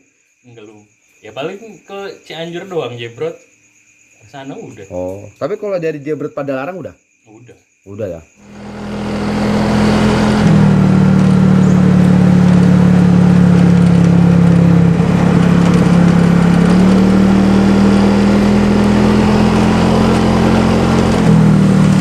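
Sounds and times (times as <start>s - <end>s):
diesel bus engine growling: 8.4s - 22.0s.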